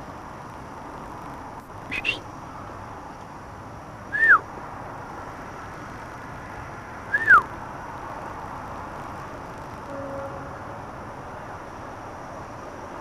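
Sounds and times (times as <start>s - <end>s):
owl calling: 1.9s - 2.2s.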